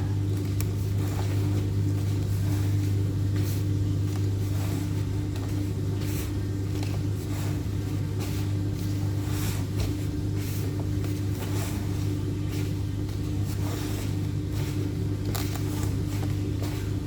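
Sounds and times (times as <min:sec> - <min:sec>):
hands kneading dough: 0:00.0 - 0:17.0
low electrical hum: 0:00.0 - 0:17.0.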